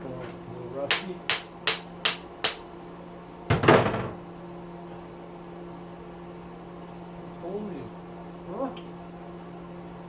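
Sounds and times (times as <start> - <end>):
hammer blows on metal: 0.9 - 2.6.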